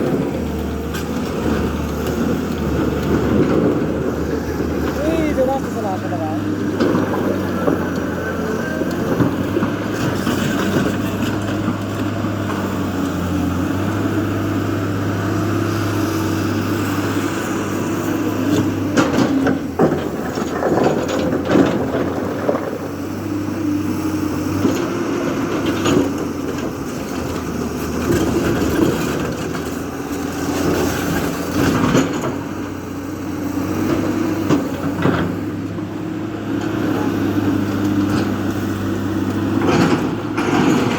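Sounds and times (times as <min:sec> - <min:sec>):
diesel engine running under load: 0:00.0 - 0:40.9.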